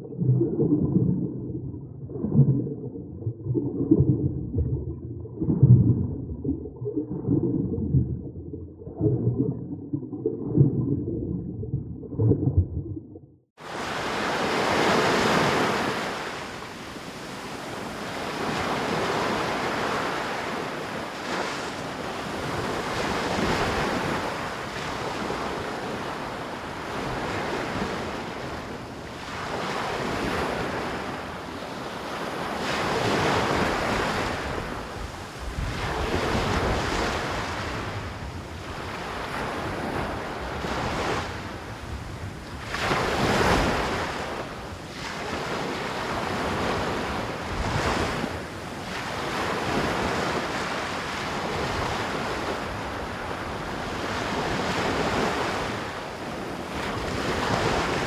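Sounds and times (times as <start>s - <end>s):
wind on microphone: 0.0s - 58.0s
ocean surf breaking on beach: 13.6s - 58.0s.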